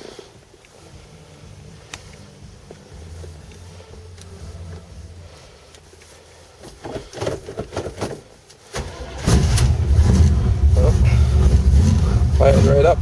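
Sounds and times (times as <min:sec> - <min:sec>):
low hum: 0:00.4 - 0:06.6, 0:08.8 - 0:13.0
car starter cranking: 0:06.7 - 0:13.0.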